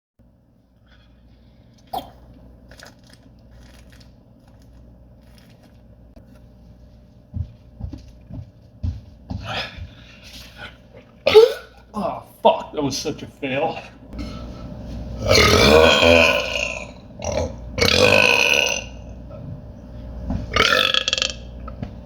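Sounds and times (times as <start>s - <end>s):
man burping: 11.2s - 12.2s, 15.2s - 19.0s, 20.6s - 21.4s.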